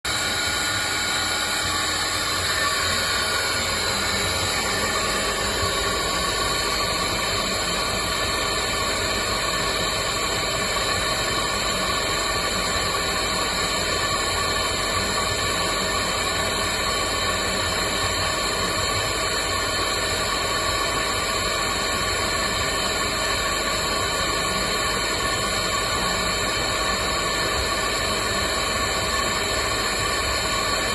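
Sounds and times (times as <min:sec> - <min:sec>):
air compressor running: 0:00.1 - 0:30.9.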